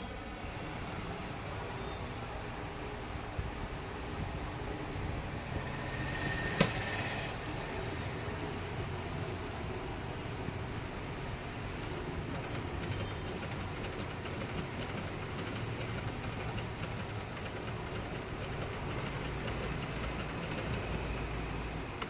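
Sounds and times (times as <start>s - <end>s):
electric sewing machine running: 5.4s - 7.4s, 12.3s - 21.4s.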